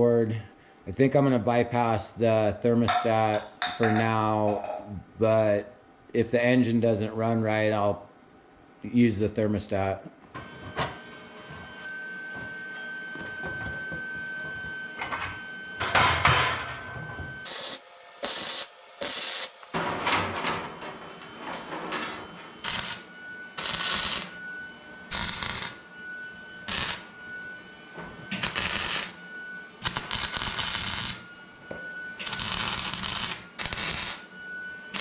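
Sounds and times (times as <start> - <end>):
faint steady whine: 0.0 - 19.8.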